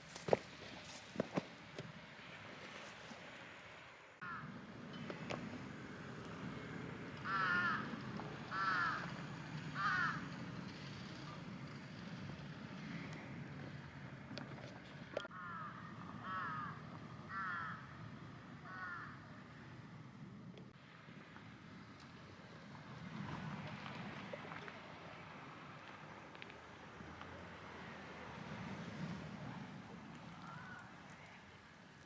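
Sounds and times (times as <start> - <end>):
crow cawing: 4.2 - 4.5, 7.2 - 10.4, 15.3 - 17.9, 18.6 - 19.4, 30.4 - 31.4.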